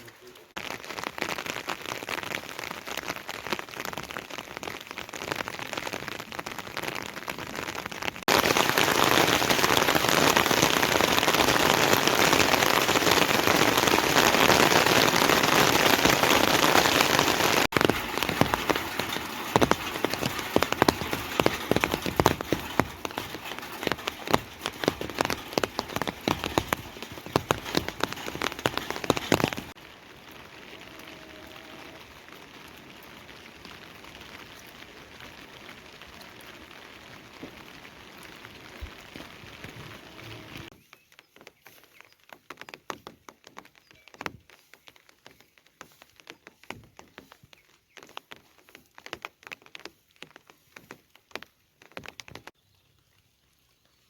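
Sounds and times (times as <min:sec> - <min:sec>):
heavy rain hissing: 0:05.8 - 0:40.7.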